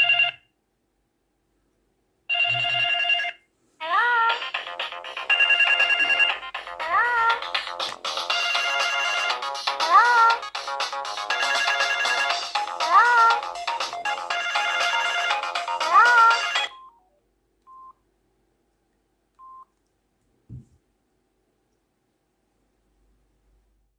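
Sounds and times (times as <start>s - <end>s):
mobile phone ringtone: 0.0s - 0.4s, 2.3s - 3.4s, 4.3s - 17.1s
low thump: 20.5s - 20.8s.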